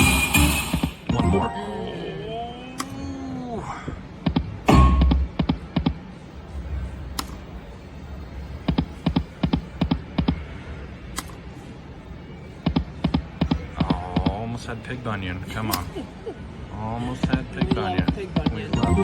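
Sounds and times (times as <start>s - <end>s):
quiet slot machine music: 0.0s - 2.5s, 4.6s - 5.4s, 18.1s - 19.0s.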